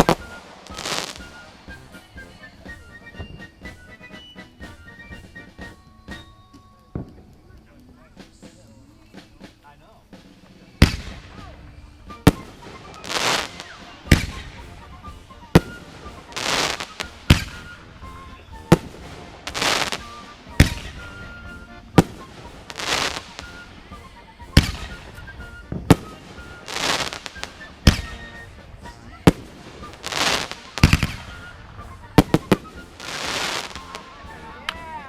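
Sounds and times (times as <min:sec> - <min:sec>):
fireworks sharp bangs: 0:00.0 - 0:02.6, 0:10.7 - 0:34.7
fireworks hissing crackling bursts: 0:00.0 - 0:05.8, 0:10.2 - 0:35.0.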